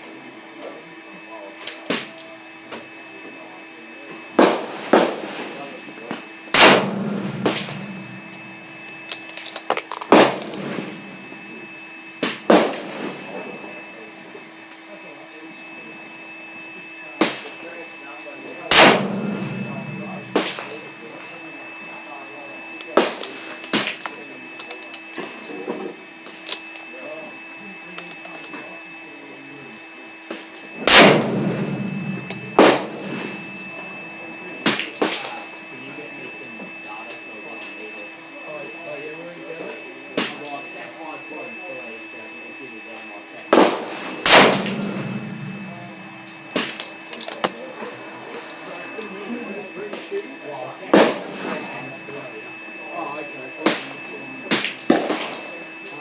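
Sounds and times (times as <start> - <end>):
rifle shots: 6.6 - 8.4, 10.1 - 11.0, 18.7 - 20.8, 30.8 - 33.7, 43.6 - 46.9, 51.0 - 51.7.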